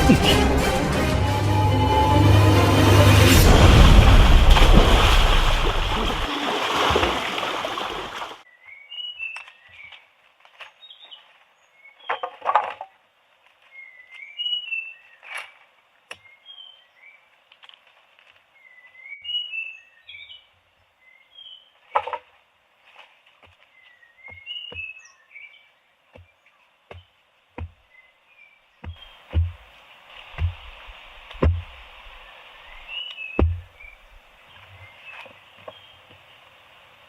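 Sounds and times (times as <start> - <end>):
birds chirping: 23.8 - 29.6, 30.3 - 36.5
loud knocks: 28.9 - 29.6, 30.4 - 30.8, 31.4 - 31.8, 33.4 - 33.7.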